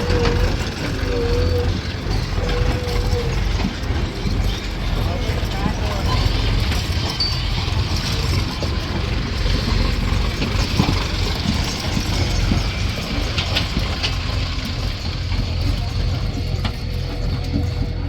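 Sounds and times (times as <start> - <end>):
heavy diesel machinery rumbling: 0.0 - 18.0
sharp metallic clinks: 5.0 - 9.0.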